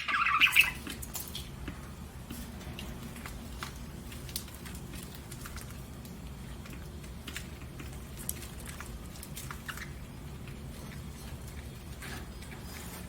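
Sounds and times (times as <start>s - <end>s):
high bird chirps: 0.0s - 0.8s
steady low hum: 0.0s - 13.0s.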